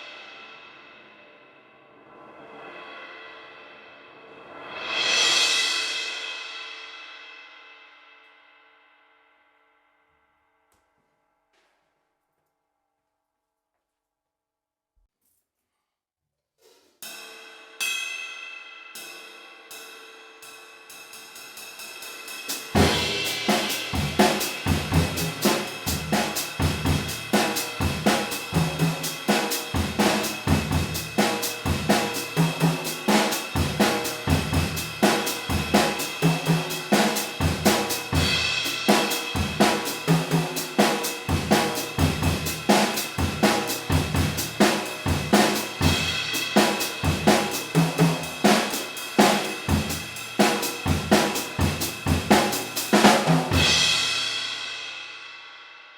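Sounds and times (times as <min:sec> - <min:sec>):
drum kit beat: 0:21.0 - 0:55.2.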